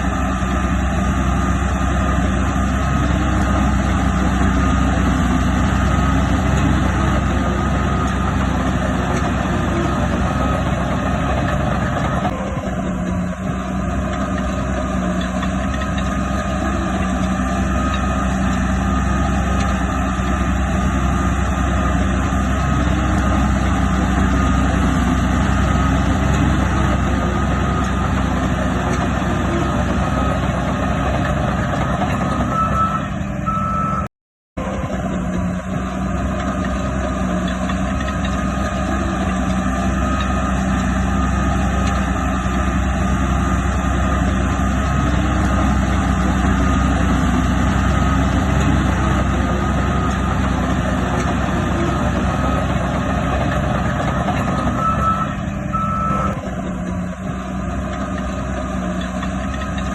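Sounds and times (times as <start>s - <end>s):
diesel machinery engine drone: 0.0s - 59.9s
reversing alarm beeping: 3.0s - 12.8s, 22.6s - 35.0s, 44.8s - 56.4s.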